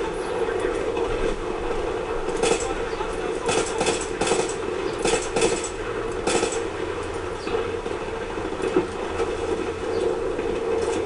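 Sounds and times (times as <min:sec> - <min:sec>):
vehicle engine hum: 0:00.0 - 0:11.0
gunfire bursts: 0:02.3 - 0:02.8, 0:03.4 - 0:06.7.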